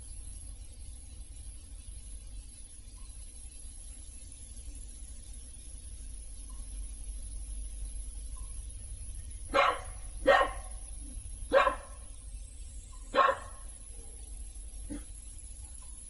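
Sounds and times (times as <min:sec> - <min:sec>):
animal barking: 0:09.5 - 0:10.8, 0:11.5 - 0:12.1, 0:13.1 - 0:14.2, 0:14.8 - 0:15.2.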